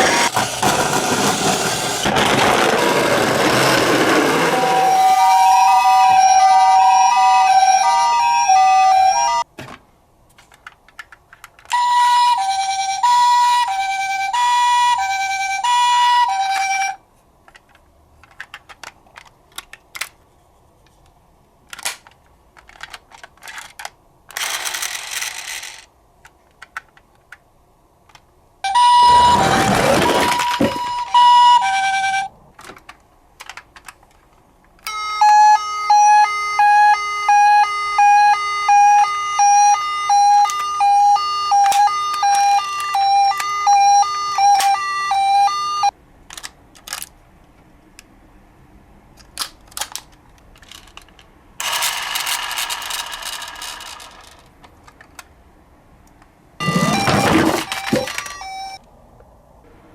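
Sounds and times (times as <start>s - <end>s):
hi-lo electronic siren: 4.4s - 9.4s, 28.7s - 32.3s, 35.0s - 45.9s
beeping electronic siren: 4.5s - 9.4s, 28.7s - 32.3s, 34.9s - 45.9s, 56.6s - 58.8s
clicks and rattles: 17.4s - 20.2s, 49.2s - 55.3s.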